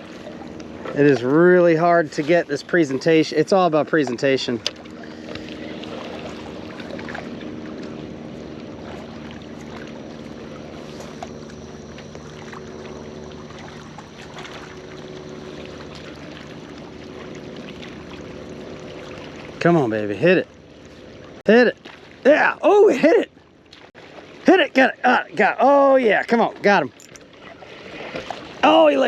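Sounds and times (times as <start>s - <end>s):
boat motor humming: 0.0s - 29.0s
water: 0.0s - 29.0s.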